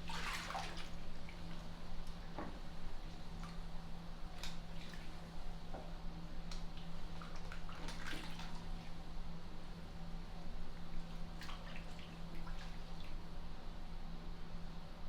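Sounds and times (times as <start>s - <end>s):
bathwater splashes and drips: 0.0s - 1.7s, 4.4s - 5.2s, 6.5s - 8.9s, 11.4s - 13.2s
steady low hum: 0.0s - 15.0s.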